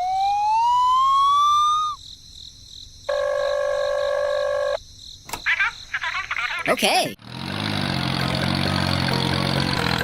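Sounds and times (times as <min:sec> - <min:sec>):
rising whistle-like tone: 0:00.0 - 0:02.0.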